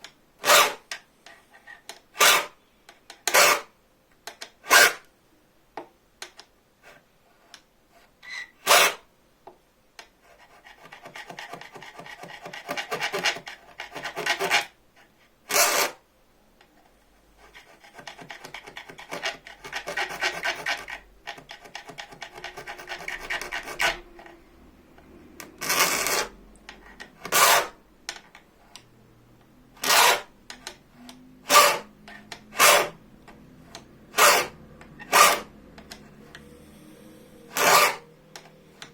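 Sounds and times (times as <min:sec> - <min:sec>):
file rasping on saw blade: 0:00.4 - 0:00.8, 0:02.2 - 0:02.6, 0:03.3 - 0:03.7, 0:04.7 - 0:05.0, 0:08.6 - 0:09.0, 0:10.4 - 0:14.7, 0:15.5 - 0:16.0, 0:17.4 - 0:21.1, 0:21.8 - 0:24.1, 0:25.6 - 0:26.4, 0:27.2 - 0:27.8, 0:29.8 - 0:30.3, 0:31.5 - 0:31.9, 0:32.5 - 0:33.0, 0:34.1 - 0:35.5, 0:37.5 - 0:38.1.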